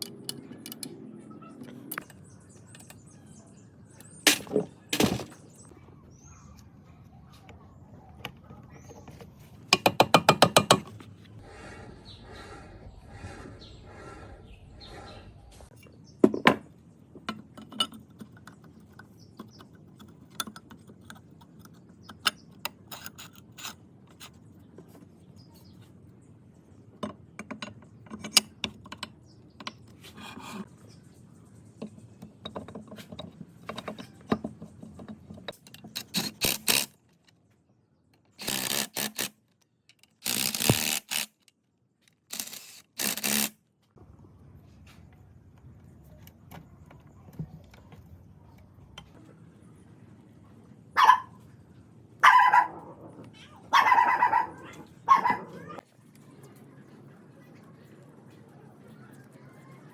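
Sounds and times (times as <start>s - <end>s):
clicks and taps of parts: 0.0s - 1.0s, 9.7s - 11.0s, 27.0s - 30.0s, 31.8s - 37.4s.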